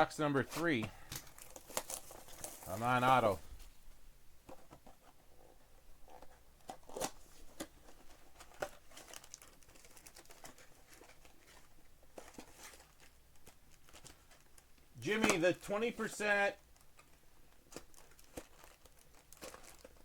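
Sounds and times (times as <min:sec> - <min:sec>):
wrappers crinkling and tearing: 0:01.1 - 0:03.5, 0:06.8 - 0:15.4, 0:16.3 - 0:20.0.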